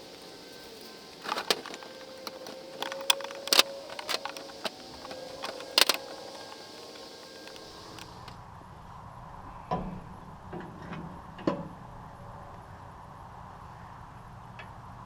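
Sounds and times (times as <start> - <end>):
faint steady hum: 0.0 - 10.6.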